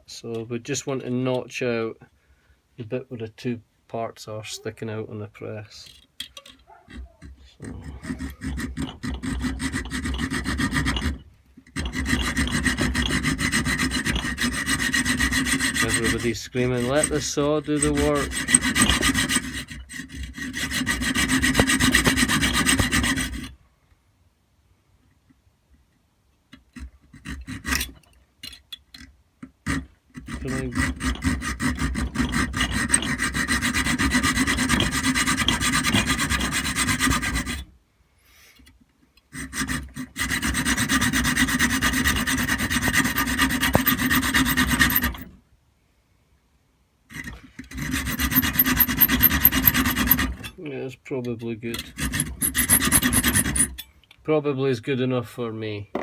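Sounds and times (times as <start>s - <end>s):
hacksaw cutting metal pipe: 6.2s - 23.6s, 26.6s - 28.1s, 29.6s - 37.7s, 39.3s - 45.4s, 47.1s - 50.6s, 51.7s - 53.9s.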